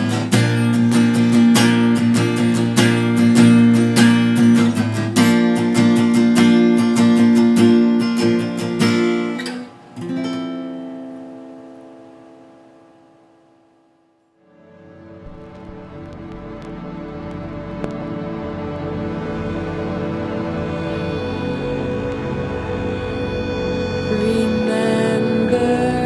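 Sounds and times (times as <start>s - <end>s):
strummed acoustic guitar chords: 0.0s - 26.0s.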